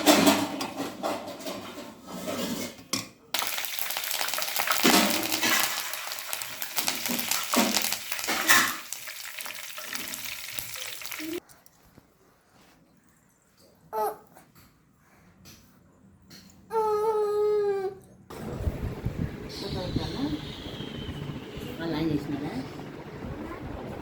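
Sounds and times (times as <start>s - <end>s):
food sizzling in hot oil: 3.4s - 11.4s
stirring in a pan: 3.4s - 11.6s.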